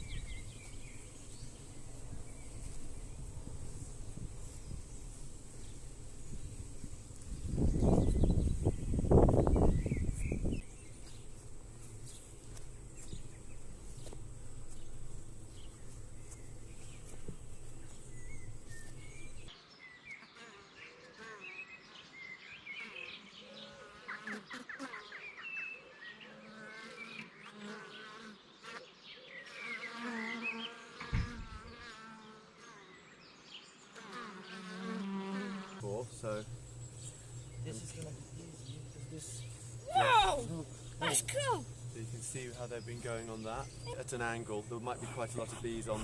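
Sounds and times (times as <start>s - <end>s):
honeybees buzzing: 0.0s - 19.5s, 33.8s - 46.0s
thump: 31.0s - 31.5s.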